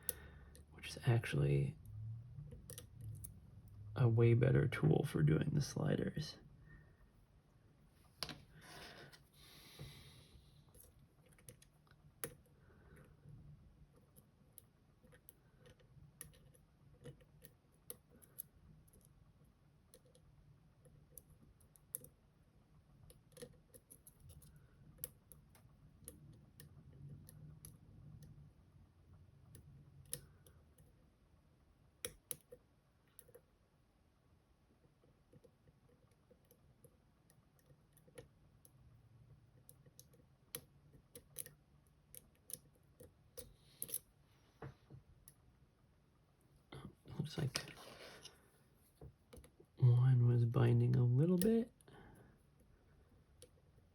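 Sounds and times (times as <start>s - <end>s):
lock picks clicking and scraping: 23.1s - 28.3s, 39.6s - 44.1s.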